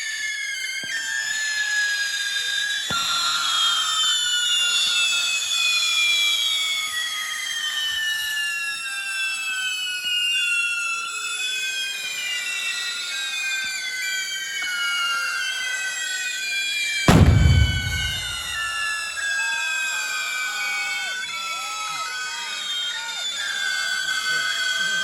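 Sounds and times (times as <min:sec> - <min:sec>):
firework whistles: 0:00.0 - 0:16.4, 0:17.1 - 0:19.2.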